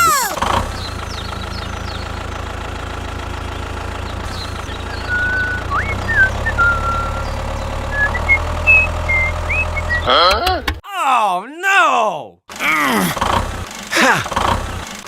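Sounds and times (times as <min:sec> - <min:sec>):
engine idling: 0:00.4 - 0:10.0.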